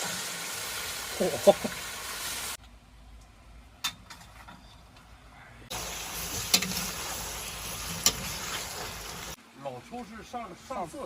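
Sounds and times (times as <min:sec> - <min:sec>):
food sizzling in hot oil: 0:00.0 - 0:02.6, 0:05.7 - 0:09.4.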